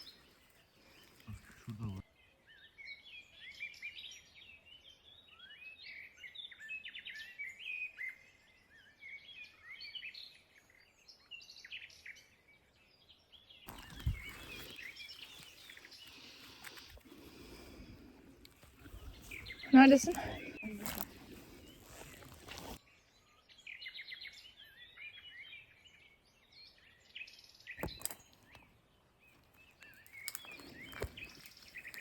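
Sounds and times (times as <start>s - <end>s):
small songbirds chirping: 0.0s - 32.0s
rustling: 13.7s - 22.8s, 29.3s - 32.0s.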